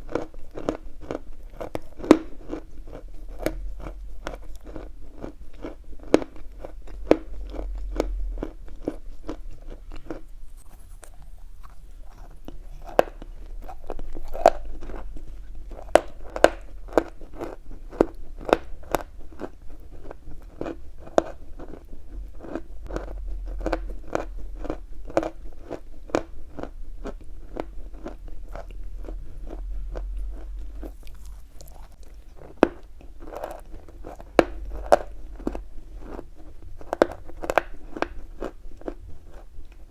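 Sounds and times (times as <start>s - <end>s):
chalk being chewed: 0.0s - 39.8s.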